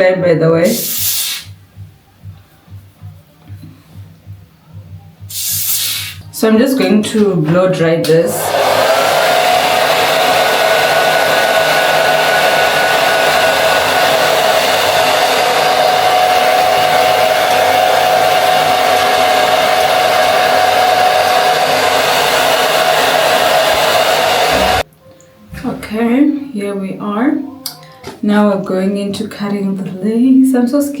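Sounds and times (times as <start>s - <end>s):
hair dryer blowing: 8.3s - 24.9s.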